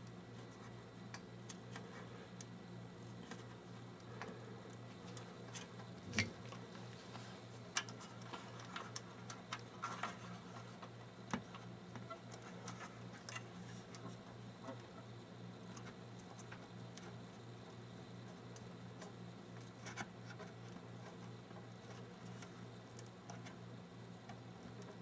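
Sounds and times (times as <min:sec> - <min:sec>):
faint steady hum: 0:00.0 - 0:25.0
small clicks and taps of handling: 0:07.7 - 0:17.2.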